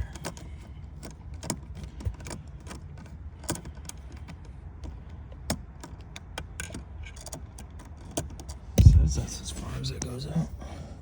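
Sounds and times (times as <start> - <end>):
hand tools clicking and tapping: 0.0 - 8.9
low steady hum: 8.6 - 11.0.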